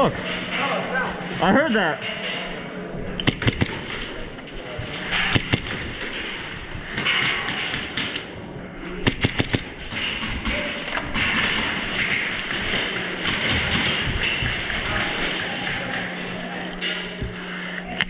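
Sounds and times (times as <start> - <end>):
airsoft gunshots: 3.2 - 4.3, 5.0 - 8.3, 8.9 - 16.2.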